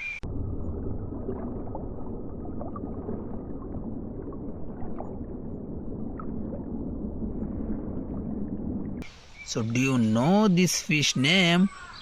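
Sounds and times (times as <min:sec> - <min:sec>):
water sloshing and gurgling: 0:00.0 - 0:09.5.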